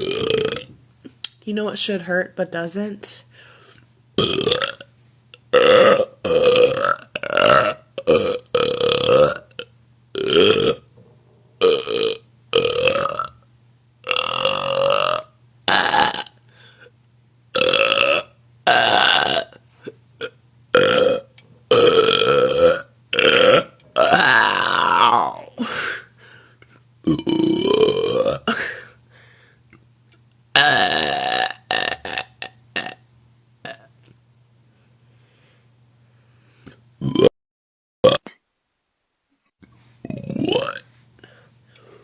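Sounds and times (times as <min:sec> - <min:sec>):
woman belching: 0:00.0 - 0:00.7, 0:04.2 - 0:04.9, 0:05.6 - 0:09.6, 0:10.2 - 0:10.9, 0:11.6 - 0:13.4, 0:14.1 - 0:16.4, 0:17.6 - 0:19.6, 0:20.7 - 0:26.0, 0:27.1 - 0:28.8, 0:30.6 - 0:33.0, 0:37.0 - 0:37.3, 0:40.1 - 0:40.9.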